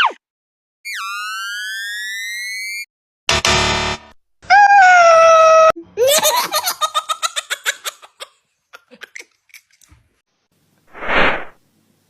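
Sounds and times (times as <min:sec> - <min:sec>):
short whoosh: 0:10.9 - 0:11.6.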